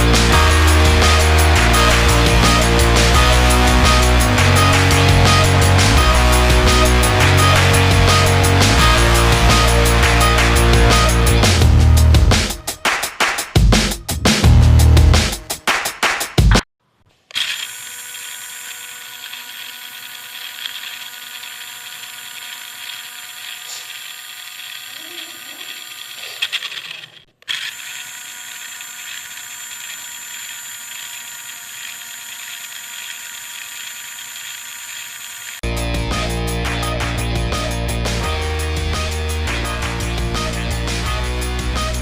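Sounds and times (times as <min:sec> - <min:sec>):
small electric motor whining: 0:17.3 - 0:36.4.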